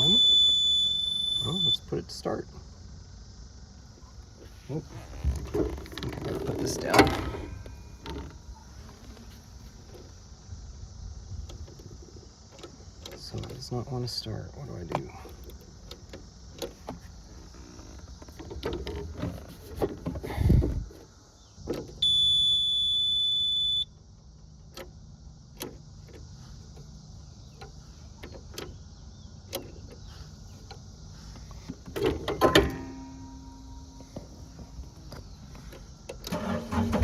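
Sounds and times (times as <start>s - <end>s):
electronic warning tone: 0.0s - 1.8s, 22.0s - 23.9s
steady low hum: 20.2s - 37.0s
levers and switches clicking: 31.9s - 35.3s.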